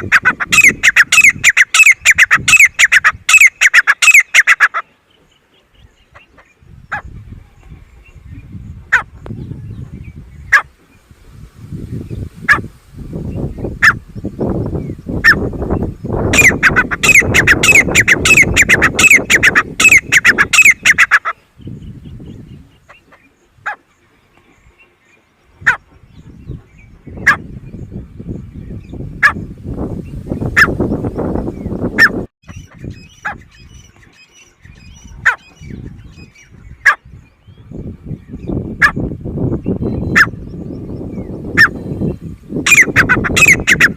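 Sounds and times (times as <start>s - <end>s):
bird calling shrill notes: 0.5s - 4.8s, 16.3s - 21.3s, 41.6s - 43.9s.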